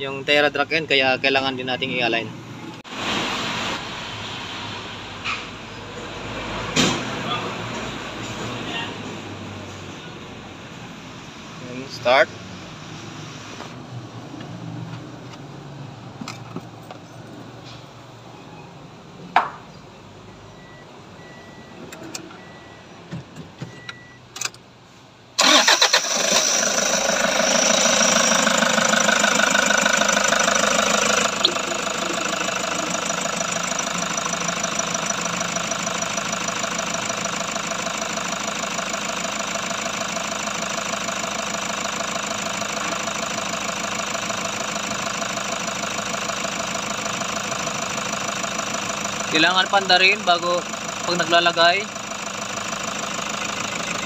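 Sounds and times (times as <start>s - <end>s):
van engine cranking and idling: 20.6s - 54.0s.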